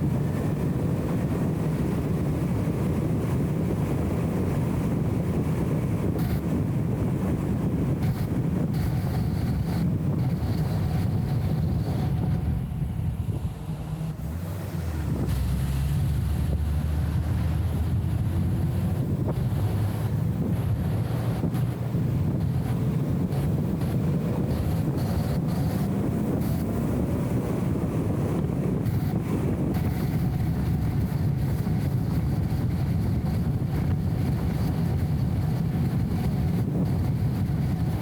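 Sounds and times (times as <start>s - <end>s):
muffled car engine rumble: 0.0s - 38.0s
road noise: 0.0s - 38.0s.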